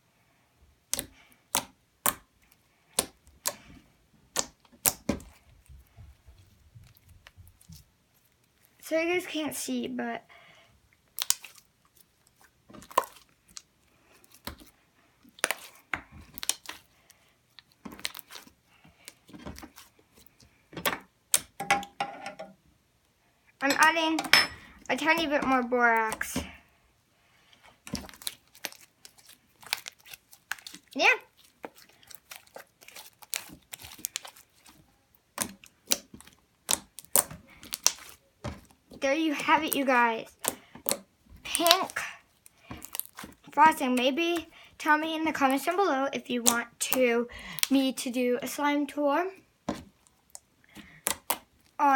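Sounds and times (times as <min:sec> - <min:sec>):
slime clicking and crackling: 0:00.8 - 0:03.7, 0:04.3 - 0:05.9, 0:11.0 - 0:21.6, 0:27.8 - 0:47.8, 0:49.7 - 0:51.8.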